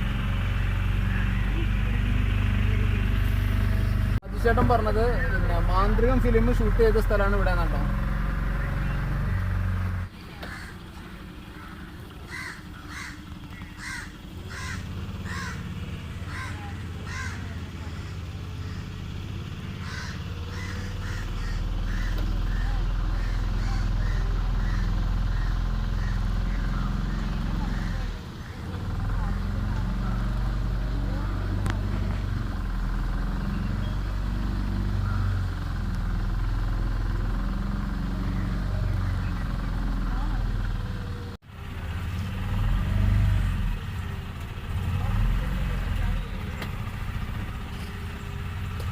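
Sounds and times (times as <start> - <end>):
motorboat engine droning: 0.0 - 48.9
crow cawing: 10.4 - 10.8, 11.5 - 19.0, 19.8 - 28.7.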